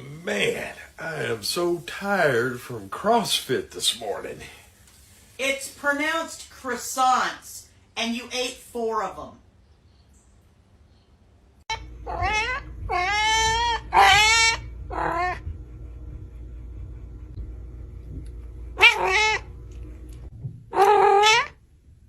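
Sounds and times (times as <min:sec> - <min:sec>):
cat meowing: 0:12.0 - 0:15.4, 0:18.8 - 0:19.5, 0:20.7 - 0:21.6.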